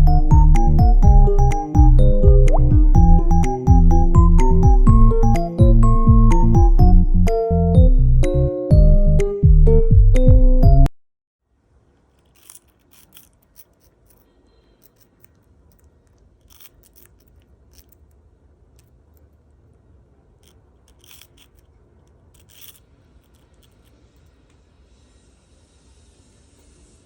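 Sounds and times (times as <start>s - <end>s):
low room hum: 11.4s - 27.0s
faint scratches and clicks: 11.9s - 24.6s.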